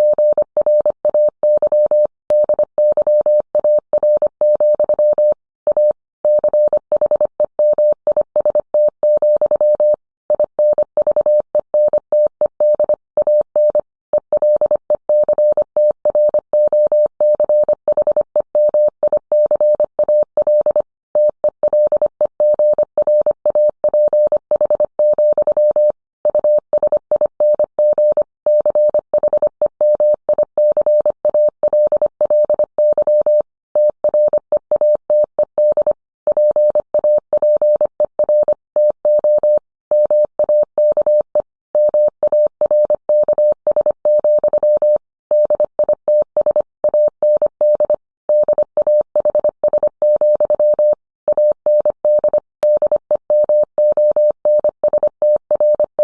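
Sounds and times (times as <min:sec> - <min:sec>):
morse code tone: 0:37.4 - 0:56.0.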